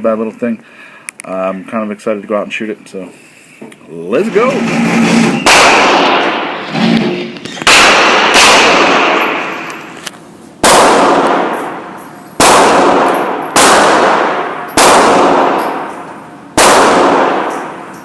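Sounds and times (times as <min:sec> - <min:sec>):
gunshots echoing indoors: 0:05.4 - 0:10.0, 0:10.6 - 0:18.0.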